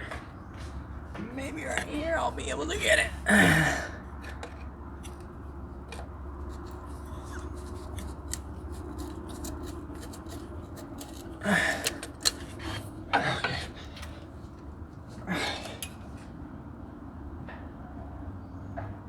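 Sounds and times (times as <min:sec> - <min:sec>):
metallic clicks and scraping: 0:04.2 - 0:14.7, 0:15.5 - 0:16.2.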